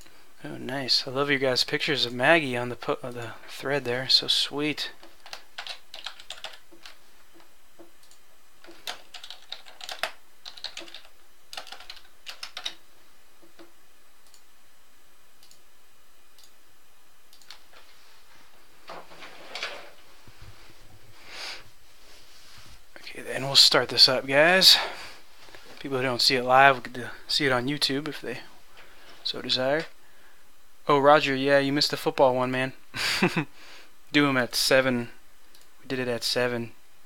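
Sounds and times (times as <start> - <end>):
computer keyboard typing: 5.0 - 7.0, 8.0 - 12.8.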